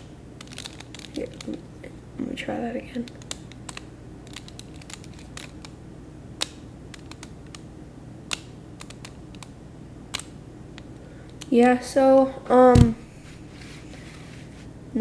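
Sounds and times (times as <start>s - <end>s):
plastic puzzle clicks: 0.4s - 1.6s, 3.0s - 5.8s, 6.4s - 7.7s, 8.3s - 11.5s.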